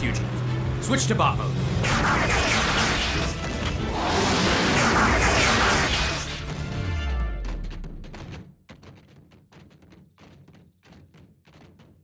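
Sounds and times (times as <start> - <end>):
music: 0.0 - 12.0
mechanical whooshing clatter: 1.8 - 6.5.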